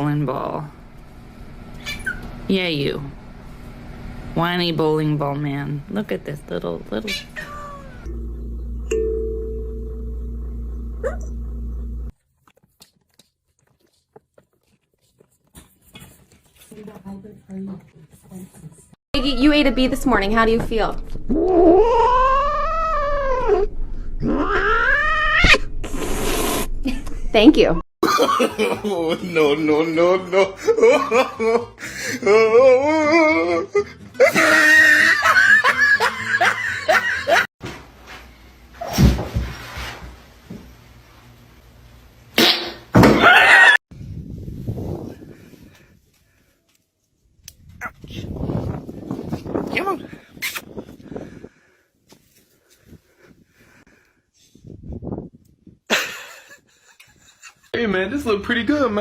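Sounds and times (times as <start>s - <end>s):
dog whining: 1.8s - 2.3s, 7.2s - 8.1s, 11.0s - 11.5s, 21.3s - 25.7s
steady low hum: 8.0s - 12.1s
person laughing: 28.0s - 37.5s, 55.9s - 57.7s.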